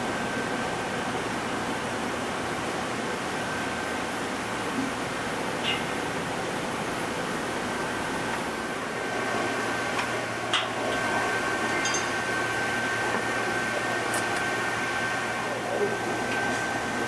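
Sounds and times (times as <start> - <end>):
factory machinery noise: 0.0 - 17.0
faint constant whine: 0.0 - 17.0
sharp metallic clinks: 11.8 - 12.2.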